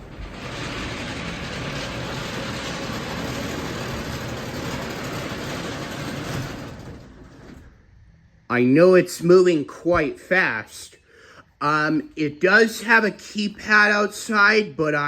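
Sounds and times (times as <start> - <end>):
garage door opener whirring: 0.0 - 8.1.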